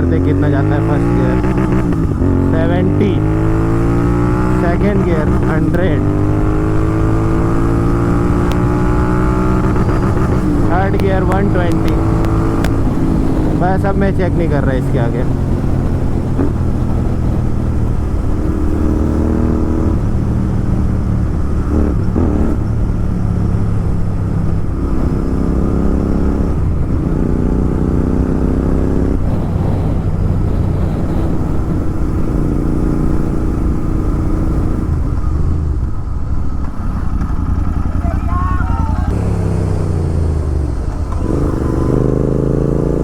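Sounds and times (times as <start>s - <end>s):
motorcycle engine revving: 0.0s - 43.0s
wind and road noise: 0.0s - 43.0s.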